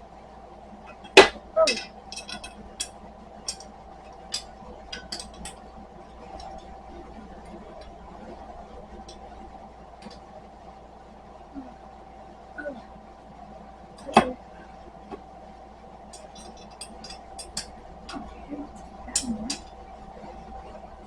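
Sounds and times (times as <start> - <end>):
metal screws clinking: 1.7 - 2.9.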